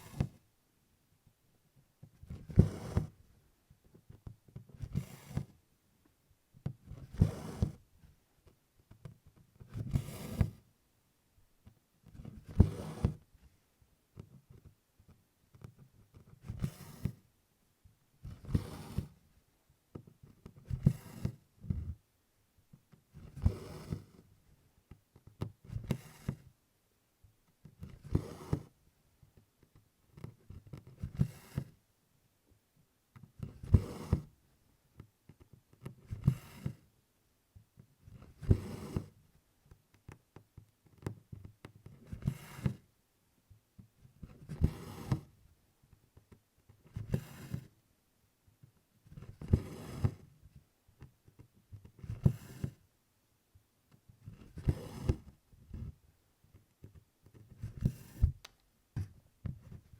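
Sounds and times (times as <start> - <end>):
thread rasping through canvas: 2.0 - 3.2, 18.2 - 19.2, 27.5 - 28.8, 33.1 - 34.3, 49.0 - 50.3, 53.9 - 59.9.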